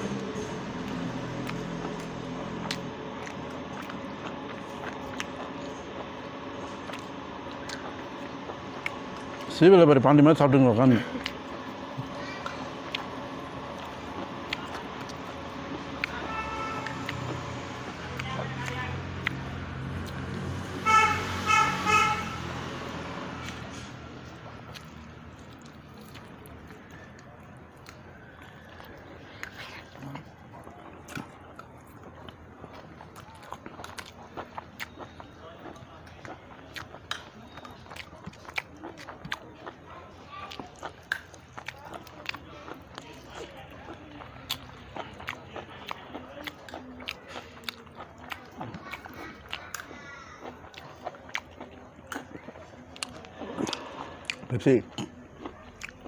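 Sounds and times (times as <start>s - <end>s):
person chewing: 0.0s - 9.7s, 10.7s - 56.0s
vehicle horn honking: 16.1s - 17.1s, 20.8s - 22.7s.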